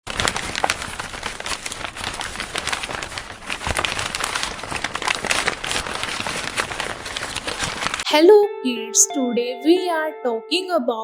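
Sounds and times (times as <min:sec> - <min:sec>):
dense crackling: 0:00.1 - 0:08.0.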